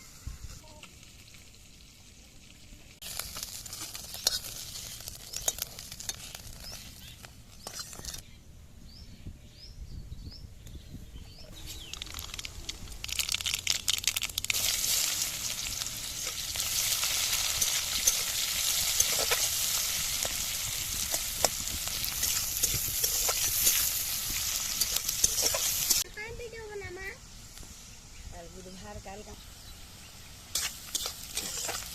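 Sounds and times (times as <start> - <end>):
food sizzling in hot oil: 0.0 - 8.2, 11.6 - 26.9, 28.8 - 31.9.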